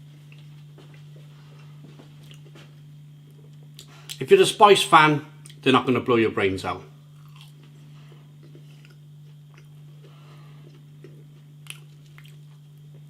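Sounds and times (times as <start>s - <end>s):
low steady hum: 0.0s - 13.0s
mouth chewing food: 7.2s - 7.7s, 8.4s - 13.0s.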